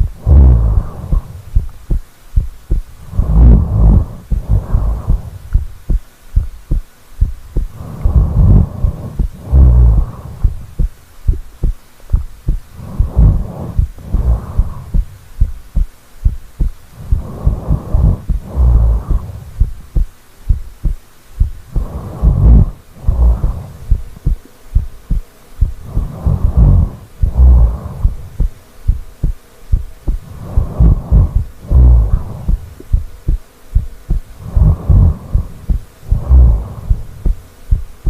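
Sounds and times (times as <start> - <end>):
person snoring: 0.0 - 1.6, 3.0 - 5.6, 7.6 - 10.9, 12.7 - 15.2, 16.9 - 19.8, 21.7 - 24.4, 25.8 - 28.5, 30.1 - 33.0, 34.4 - 37.4
heartbeat thumping: 0.0 - 38.0.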